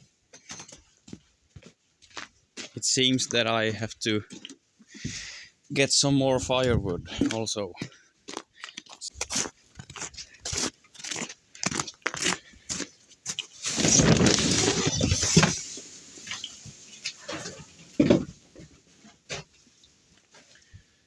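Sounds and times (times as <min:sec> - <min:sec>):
wooden logs knocking together: 0:17.2 - 0:18.7.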